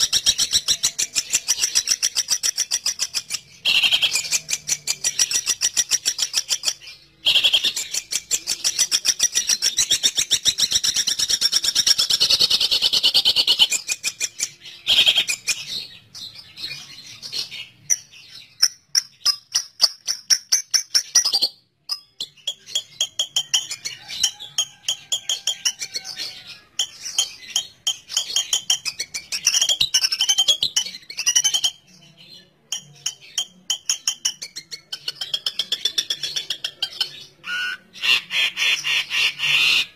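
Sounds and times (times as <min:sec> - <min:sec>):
shrike harsh chattering calls: 0:00.0 - 0:15.8, 0:34.9 - 0:39.9.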